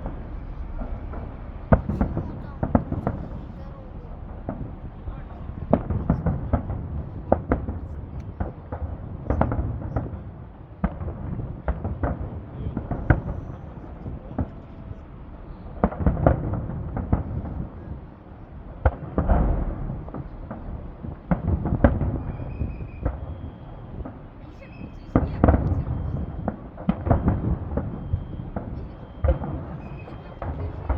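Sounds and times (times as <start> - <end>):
low rumble: 0.0 - 17.8
fireworks bangs: 0.0 - 30.9.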